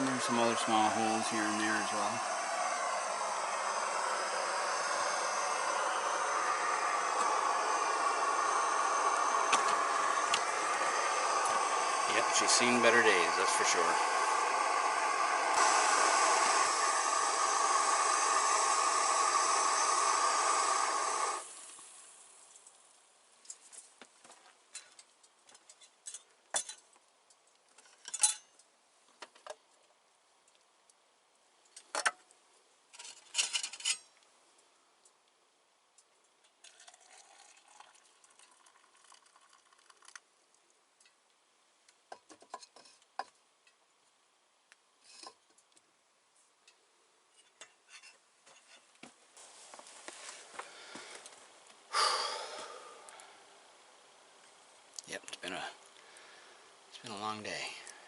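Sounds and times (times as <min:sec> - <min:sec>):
steady hiss: 0:00.0 - 0:24.0, 0:49.3 - 0:58.0
cookware and utensils clinking: 0:27.9 - 0:28.6, 0:33.0 - 0:34.1.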